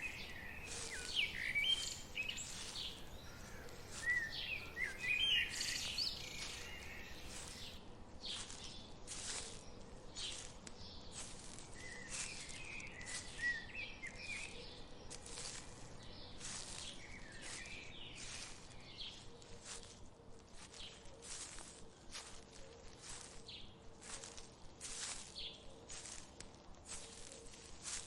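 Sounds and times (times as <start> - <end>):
bird chirping: 0.0 - 7.8
rustling: 0.1 - 7.8.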